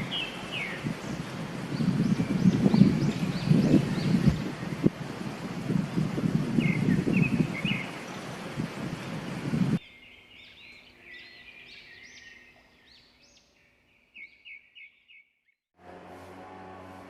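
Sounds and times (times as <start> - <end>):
bird chirping: 9.8 - 15.6
background music: 15.8 - 17.0.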